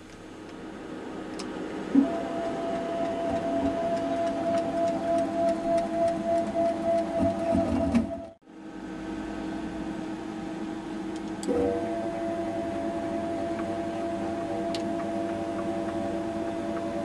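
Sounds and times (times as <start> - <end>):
cnc router whining: 1.9 - 8.4, 11.4 - 17.0.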